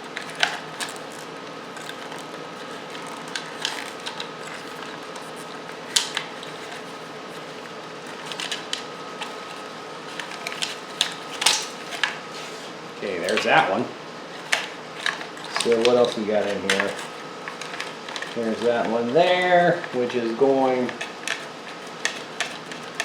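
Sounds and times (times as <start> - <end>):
steady low hum: 0.0 - 23.0
wire connectors clicking: 14.4 - 23.0.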